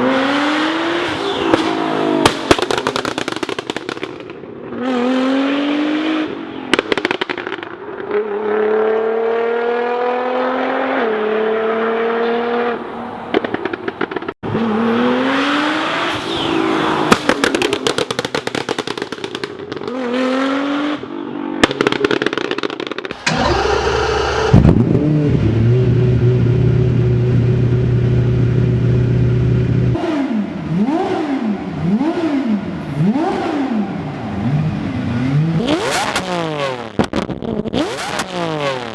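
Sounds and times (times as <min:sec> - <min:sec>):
exhaust cracks: 0:23.0 - 0:25.0
sports car engine revving: 0:23.1 - 0:37.1.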